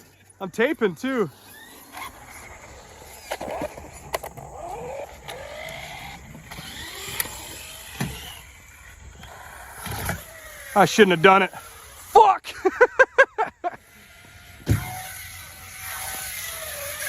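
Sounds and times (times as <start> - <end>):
electric motor whining: 0.0 - 12.2, 13.6 - 17.0.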